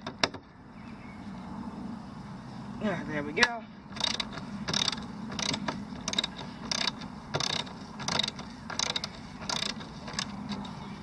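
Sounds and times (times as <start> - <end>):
socket ratchet clicking: 3.9 - 10.7.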